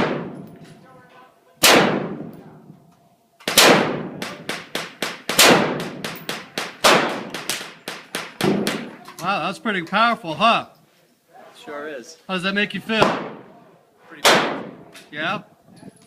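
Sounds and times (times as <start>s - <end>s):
rifle shots ringing out: 0.0s - 0.6s, 1.6s - 2.4s, 3.4s - 9.0s, 13.0s - 13.5s, 14.2s - 14.9s.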